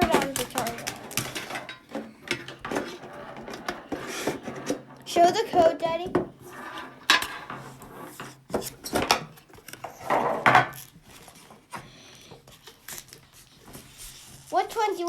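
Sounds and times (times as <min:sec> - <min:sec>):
card packaging rustling: 0:00.0 - 0:01.5.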